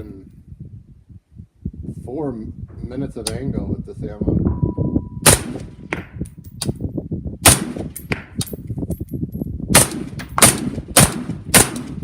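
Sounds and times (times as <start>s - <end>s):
rifle shots: 5.2s - 5.8s, 7.4s - 8.1s, 9.7s - 12.0s.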